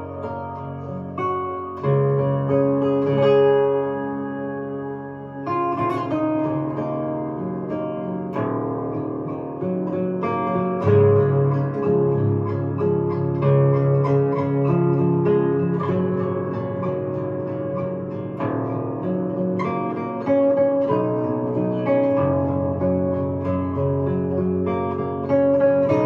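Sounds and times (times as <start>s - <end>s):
plucked harp guitar melody: 0.0s - 26.0s.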